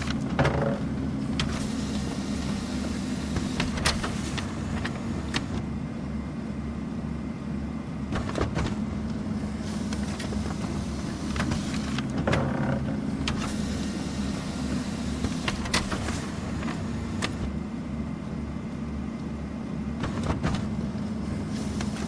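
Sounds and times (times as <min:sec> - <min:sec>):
printer motor hum: 0:00.0 - 0:22.0
paper feeding clicks: 0:01.3 - 0:05.7, 0:08.2 - 0:12.6, 0:13.2 - 0:17.5, 0:20.0 - 0:20.8, 0:21.4 - 0:22.0.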